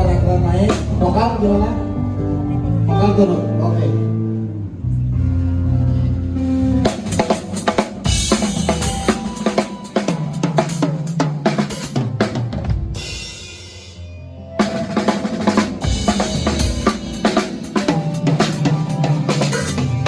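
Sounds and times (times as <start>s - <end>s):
rock drum kit: 0.0s - 1.3s, 6.8s - 20.0s
bass line: 0.0s - 10.6s, 13.9s - 20.0s.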